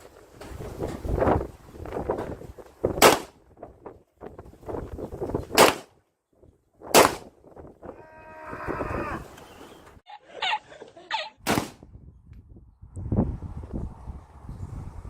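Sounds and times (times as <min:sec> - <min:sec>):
wind buffeting microphone: 0:00.0 - 0:05.8, 0:06.4 - 0:10.0, 0:11.7 - 0:15.0
rifle shots: 0:03.0 - 0:03.4, 0:05.6 - 0:05.9, 0:06.9 - 0:07.3, 0:11.4 - 0:11.8.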